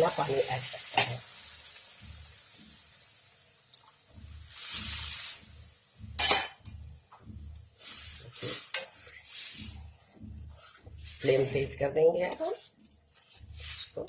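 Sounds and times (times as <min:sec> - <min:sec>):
faint sizzle: 0:00.0 - 0:14.0
spoon scraping a pan: 0:07.8 - 0:09.8.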